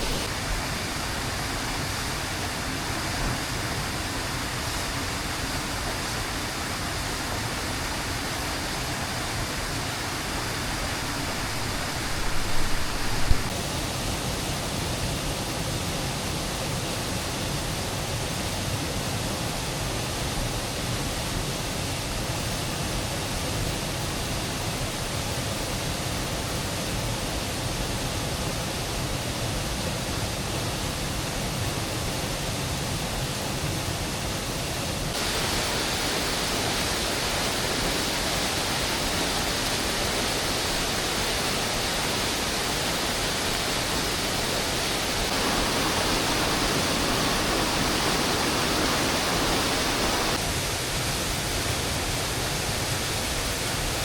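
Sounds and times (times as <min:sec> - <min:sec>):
rush of water: 0:00.0 - 0:14.2, 0:33.1 - 0:54.0.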